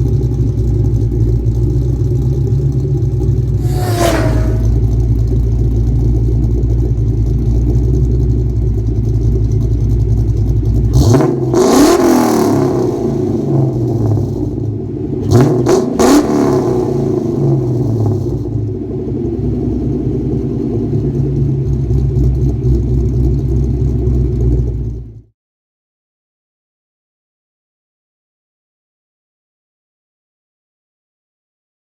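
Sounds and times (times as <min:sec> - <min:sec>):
car engine idling and revving: 0:00.0 - 0:25.3.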